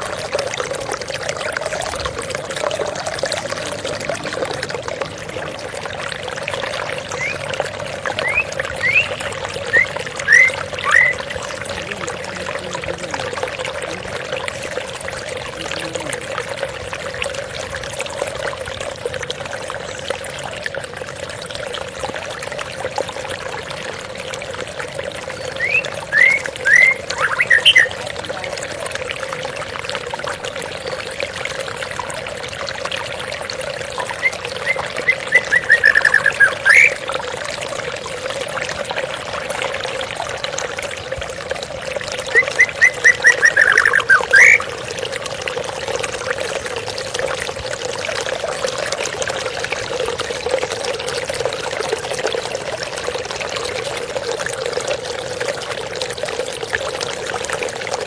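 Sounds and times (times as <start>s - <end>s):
water flowing and pouring: 0.0s - 58.0s.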